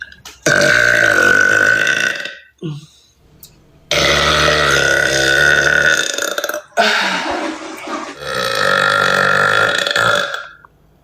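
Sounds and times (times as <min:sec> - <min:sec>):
woman burping loudly: 0:00.4 - 0:02.8, 0:03.9 - 0:10.7.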